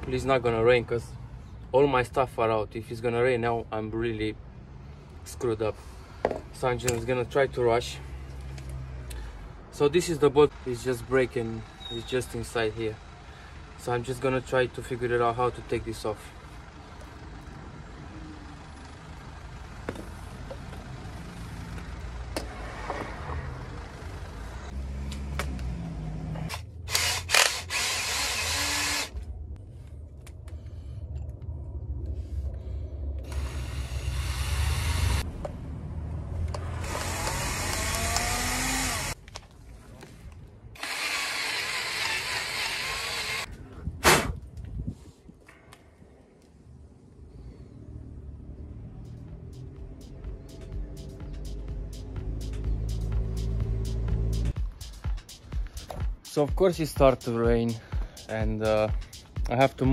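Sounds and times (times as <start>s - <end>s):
power tool bursts: 26.9s - 29.1s, 33.3s - 35.2s, 36.8s - 39.2s, 40.8s - 43.5s
steady low rumble: 29.1s - 37.2s, 43.4s - 59.9s.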